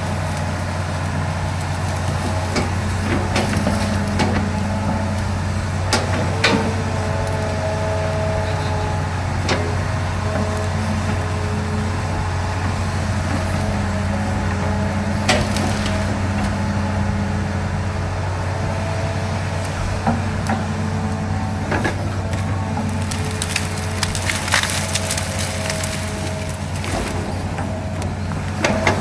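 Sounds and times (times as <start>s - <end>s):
wood cracking and splintering: 0.0s - 16.6s, 19.6s - 29.0s
excavator diesel engine running: 0.0s - 29.0s
hydraulic whine: 0.0s - 29.0s.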